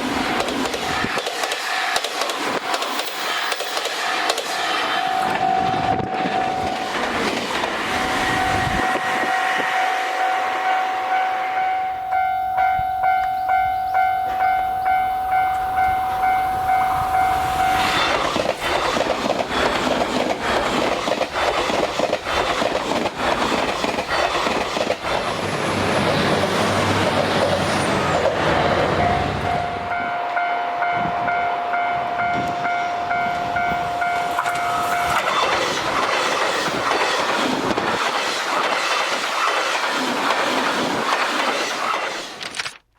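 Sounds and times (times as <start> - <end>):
train wheels clattering on rail joints: 0.0 - 9.4, 17.9 - 29.6, 32.3 - 42.5.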